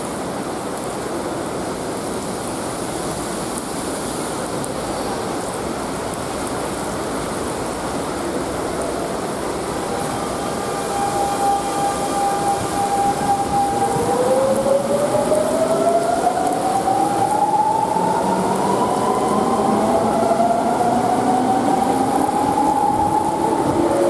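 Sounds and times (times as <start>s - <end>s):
heavy rain pouring: 0.0s - 24.0s
train running: 0.2s - 24.0s
steady high whine: 8.0s - 24.0s.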